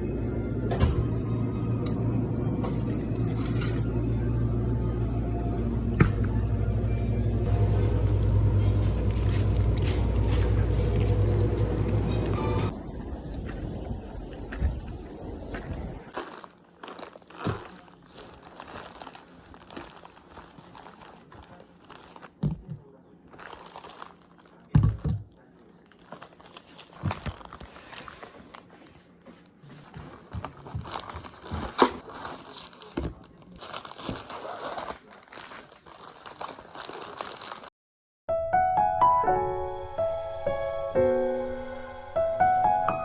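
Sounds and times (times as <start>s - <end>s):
rustling and crinkling: 8.8s - 37.7s.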